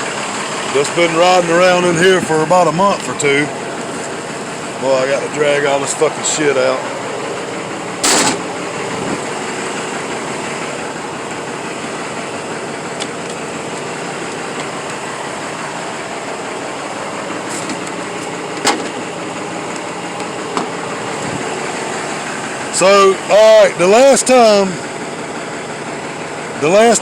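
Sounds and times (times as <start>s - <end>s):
truck engine idling: 0.0s - 27.0s
sharp clicks or knocks: 8.0s - 8.4s.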